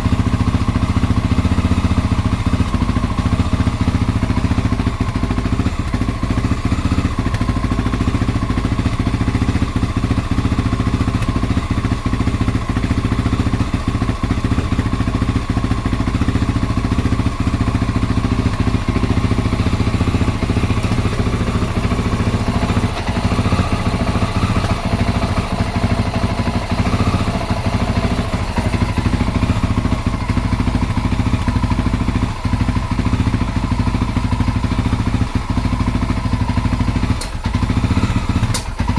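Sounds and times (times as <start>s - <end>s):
motorcycle engine idling roughly: 0.0s - 38.9s.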